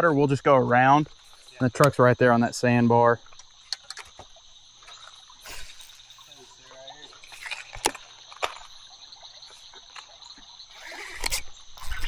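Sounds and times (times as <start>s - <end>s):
creek water trickling: 0.0s - 12.0s
insects chirring: 0.0s - 12.0s
sharp clicks: 10.8s - 12.0s.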